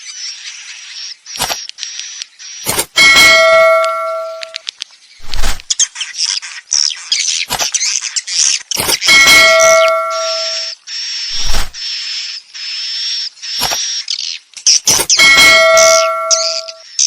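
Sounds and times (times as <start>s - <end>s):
ringing bell-like chime: 2.9s - 4.6s, 9.0s - 10.7s, 15.0s - 16.8s.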